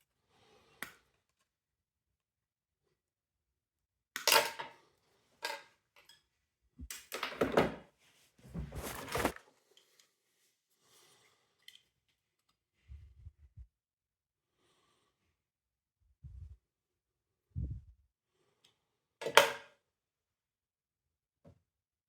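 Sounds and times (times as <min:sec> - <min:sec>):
plastic parts clacking and scraping: 0:08.6 - 0:09.4.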